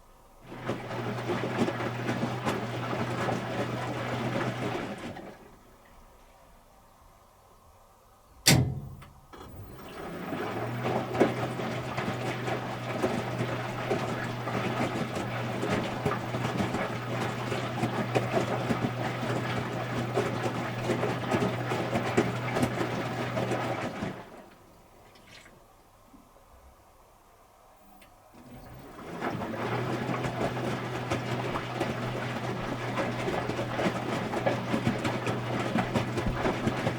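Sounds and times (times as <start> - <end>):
water rushing into washing machine: 0.4 - 6.0, 8.5 - 25.7, 28.3 - 36.9
washing machine click: 8.4 - 9.6.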